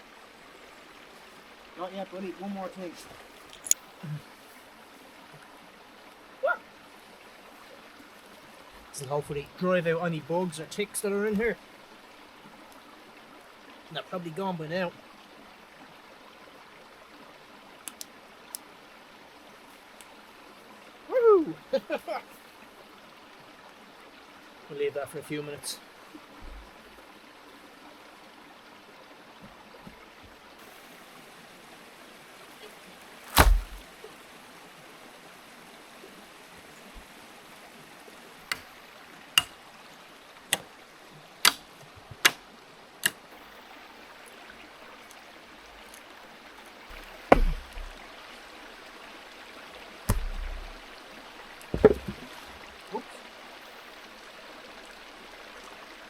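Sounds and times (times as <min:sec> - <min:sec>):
river flowing: 0:00.0 - 0:56.0
heavy thumps: 0:33.3 - 0:33.8, 0:46.9 - 0:48.0, 0:50.1 - 0:50.8, 0:51.7 - 0:52.4
sharp knocks: 0:33.3 - 0:33.8, 0:46.9 - 0:48.0, 0:50.1 - 0:50.8, 0:51.7 - 0:52.2.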